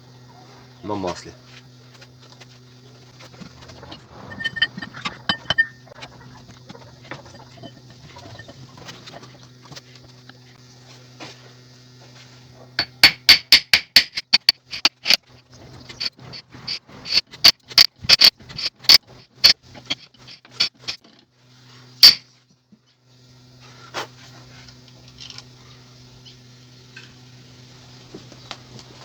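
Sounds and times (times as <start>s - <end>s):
steady low hum: 0.0s - 29.0s
metal parts clicking and tapping: 4.4s - 9.2s, 12.8s - 15.3s, 15.9s - 21.2s, 22.0s - 22.2s.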